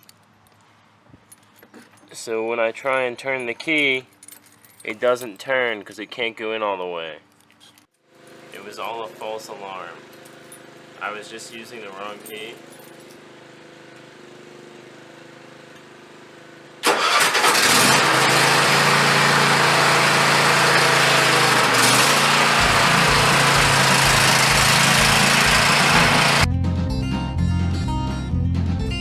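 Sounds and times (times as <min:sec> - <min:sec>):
lawn mower engine running: 0:08.1 - 0:11.3, 0:12.6 - 0:26.5.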